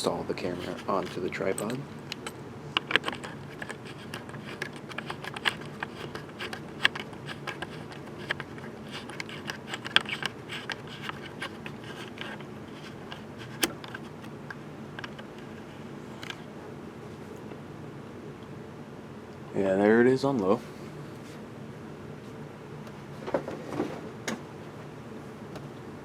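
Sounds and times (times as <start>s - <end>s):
steady low hum: 0.0s - 26.0s
camera clicks and scrapes: 0.4s - 14.3s, 15.0s - 16.4s.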